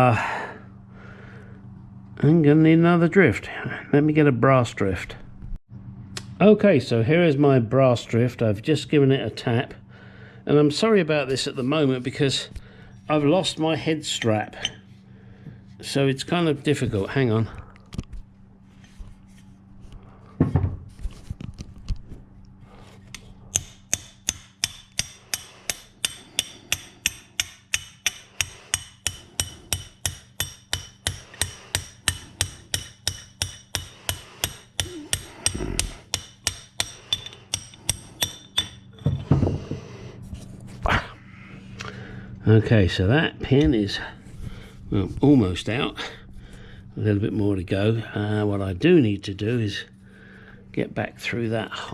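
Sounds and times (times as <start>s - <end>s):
hammer tapping metal: 23.5s - 39.1s.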